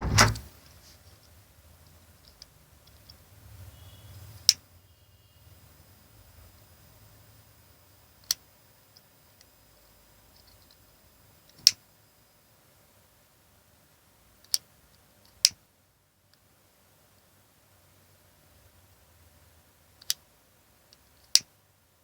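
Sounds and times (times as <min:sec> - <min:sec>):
faint small ticks: 0:00.6 - 0:13.1.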